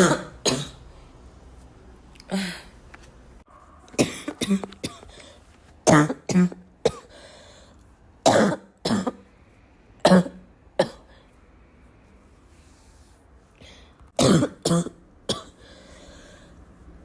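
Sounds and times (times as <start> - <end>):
person coughing: 0.0 - 0.8, 4.0 - 5.2, 5.9 - 7.2, 8.2 - 9.2, 10.0 - 11.1, 14.2 - 15.6.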